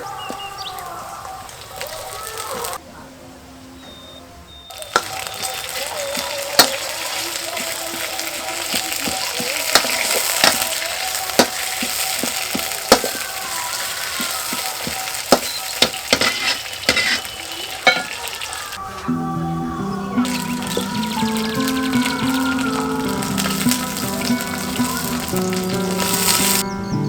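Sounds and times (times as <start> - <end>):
food sizzling in hot oil: 1.5 - 2.8, 4.7 - 18.8, 20.2 - 26.6
metal spatula scraping pan: 4.9 - 13.2, 13.8 - 18.4.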